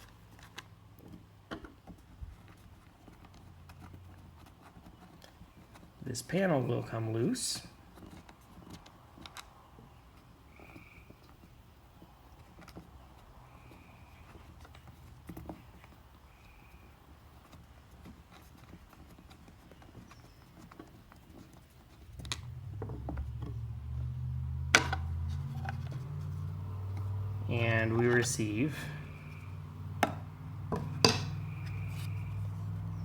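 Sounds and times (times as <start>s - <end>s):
handling noise rumble: 22.0s - 33.0s.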